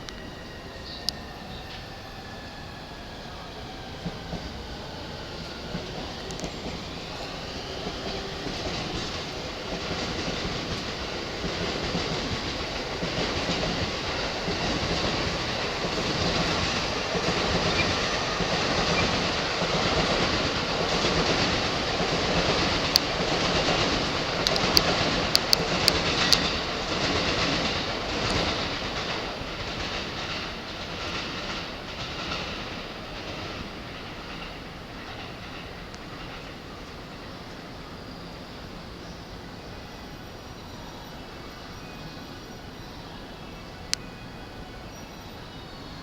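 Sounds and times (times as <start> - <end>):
electric train wheels clattering: 0.0 - 46.0
sharp clicks: 24.4 - 26.6.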